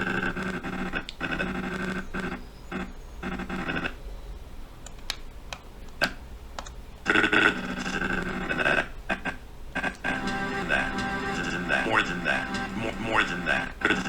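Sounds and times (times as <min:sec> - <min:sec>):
mouse and keyboard clicks: 0:04.8 - 0:06.8
chopped recorded voice playback: 0:07.1 - 0:14.0.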